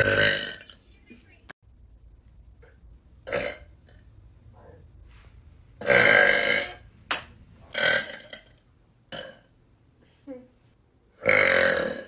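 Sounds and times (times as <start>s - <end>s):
person burping: 0.0s - 0.7s, 2.6s - 4.0s, 5.8s - 6.8s, 7.7s - 9.5s, 11.2s - 12.0s.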